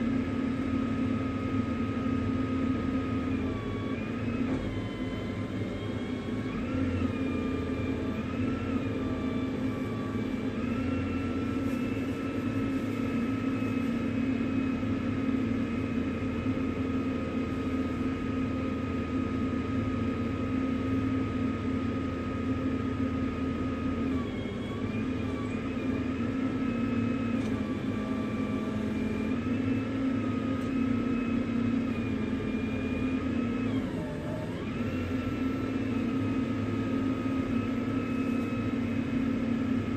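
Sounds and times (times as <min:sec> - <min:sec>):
steady engine whine: 0:00.0 - 0:39.9
truck engine running: 0:07.1 - 0:18.7.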